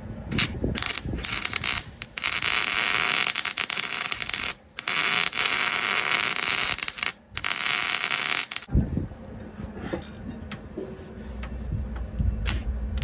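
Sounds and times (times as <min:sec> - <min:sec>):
arc welder crackling and hissing: 0:00.0 - 0:08.7, 0:12.4 - 0:13.0.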